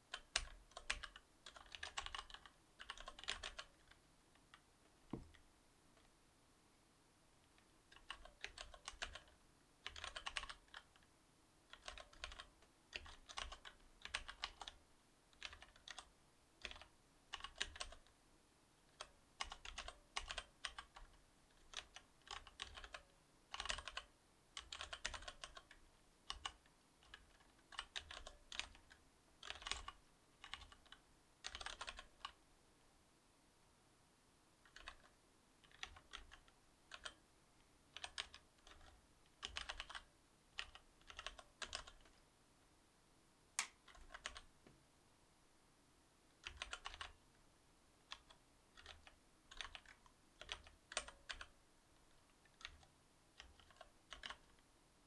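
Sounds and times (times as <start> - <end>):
mechanical keyboard typing: 0.1 - 4.6, 7.9 - 11.1, 11.7 - 18.1, 18.9 - 32.4, 34.6 - 37.2, 37.9 - 42.2, 43.6 - 44.5, 46.4 - 47.2, 48.1 - 51.5, 52.4 - 54.6.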